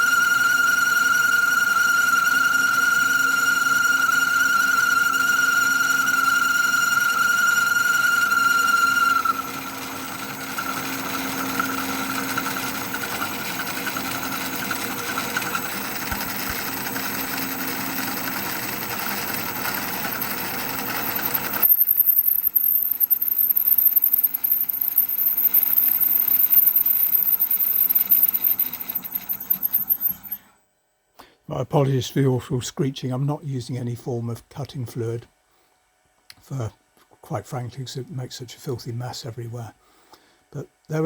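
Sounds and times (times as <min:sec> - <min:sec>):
jig borer screeching on metal: 0:00.0 - 0:30.4.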